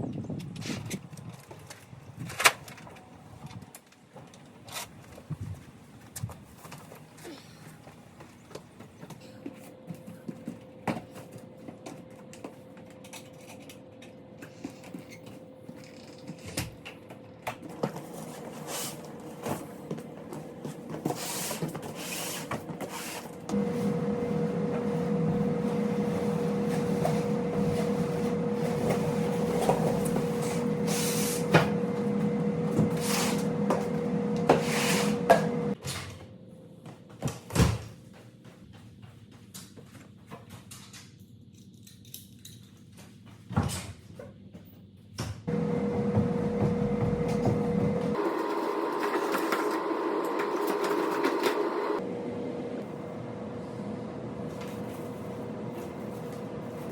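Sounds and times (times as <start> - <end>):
machine hum: 17.0 - 35.8, 45.5 - 56.9.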